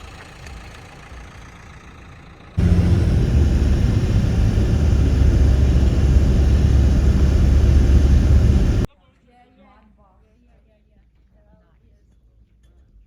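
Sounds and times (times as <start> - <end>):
loud low rumble: 2.6 - 8.9.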